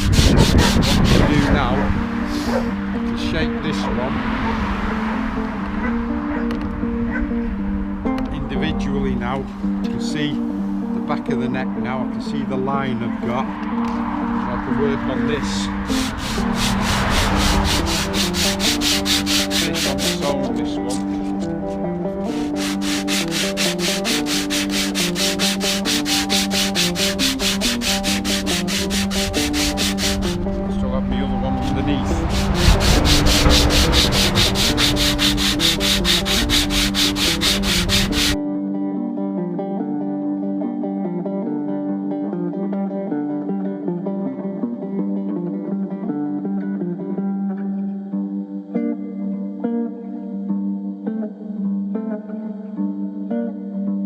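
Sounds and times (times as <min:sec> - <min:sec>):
sandpaper rubbing on wood: 0:00.0 - 0:02.7, 0:15.9 - 0:30.4, 0:32.1 - 0:38.4
plucked guitar music: 0:00.0 - 0:54.0.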